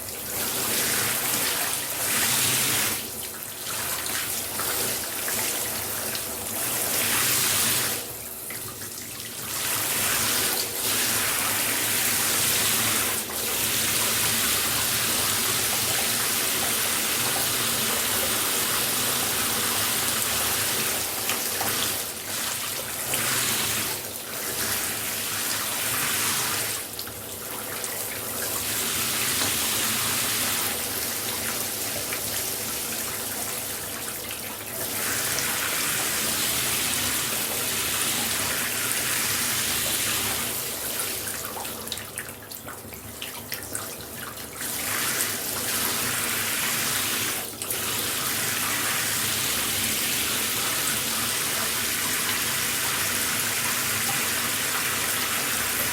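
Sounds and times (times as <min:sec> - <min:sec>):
shower spray running: 0:09.7 - 0:26.8.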